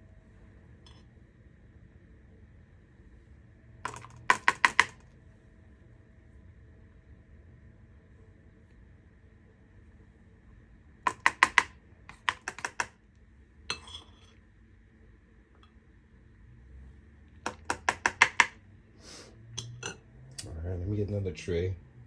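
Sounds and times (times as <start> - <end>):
teaspoon tapping ice cube tray: 3.9 - 5.0, 11.1 - 13.0, 17.4 - 18.6
spoon scraping: 13.7 - 14.4, 19.1 - 20.0.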